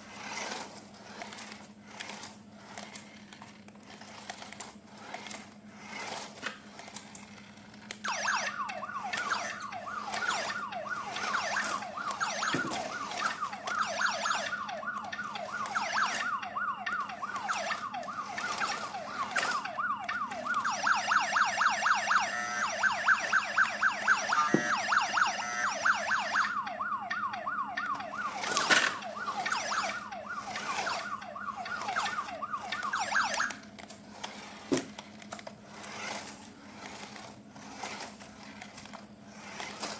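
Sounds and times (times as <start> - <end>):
toy police siren wailing: 8.0 - 33.6.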